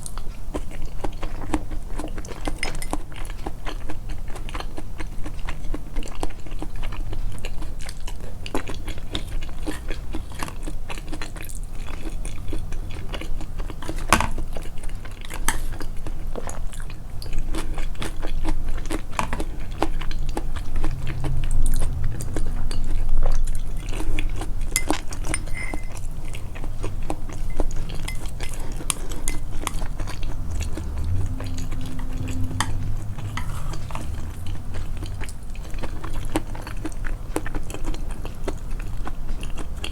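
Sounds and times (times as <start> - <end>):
close chewing: 0.0 - 39.9
utensils clicking against dishes: 24.8 - 26.0.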